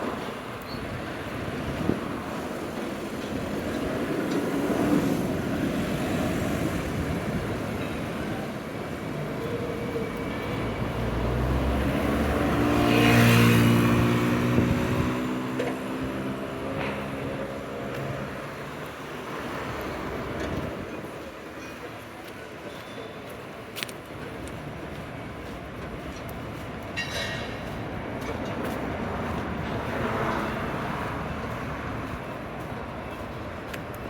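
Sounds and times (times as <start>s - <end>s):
street traffic: 0.0s - 34.0s
vehicle engine passing by: 10.5s - 18.3s.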